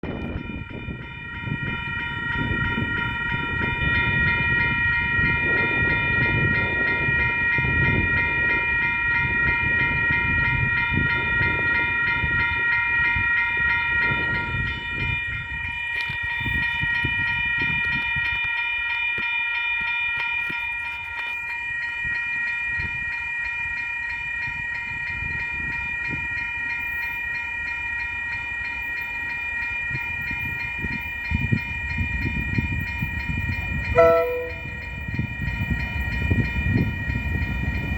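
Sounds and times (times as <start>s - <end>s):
crossing bells chiming: 0.2s - 37.9s
locomotive engine and wheels rumbling: 28.3s - 37.9s.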